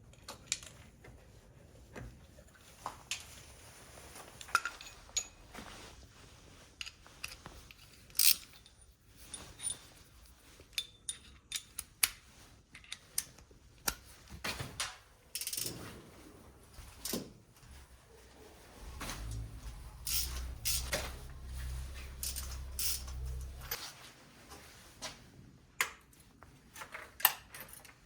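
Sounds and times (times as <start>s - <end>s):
metal tools clinking: 18.8s - 23.8s.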